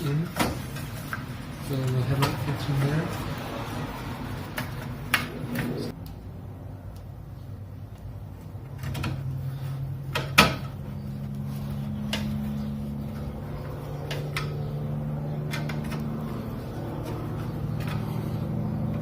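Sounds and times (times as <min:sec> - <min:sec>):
low hum: 0:05.4 - 0:19.0.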